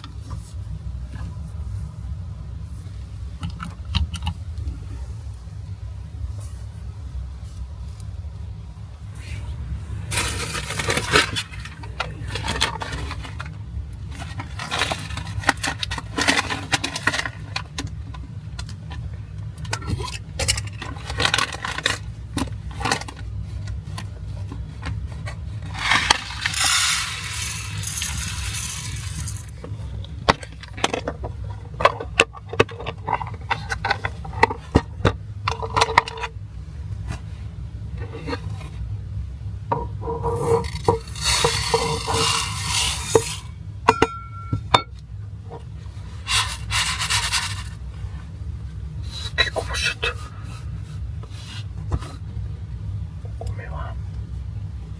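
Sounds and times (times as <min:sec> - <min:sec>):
utensils clinking and scraping: 0:10.1 - 0:13.4, 0:25.6 - 0:29.5, 0:40.0 - 0:44.5, 0:46.2 - 0:47.8.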